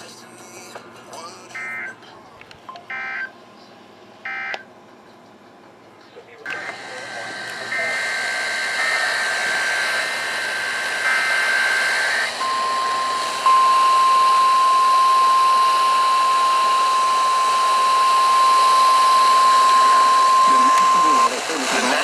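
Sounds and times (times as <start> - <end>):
steady warning alarm tone: 1.6 - 2.0, 2.9 - 3.3, 4.2 - 4.6, 6.6 - 22.0
radio static hiss: 6.1 - 10.3, 19.3 - 22.0
buzzy digital header bursts: 6.8 - 14.4, 16.8 - 22.0.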